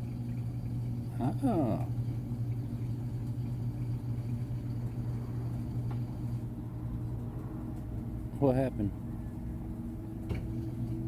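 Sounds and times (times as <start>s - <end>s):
washing machine spinning: 0.0s - 11.0s.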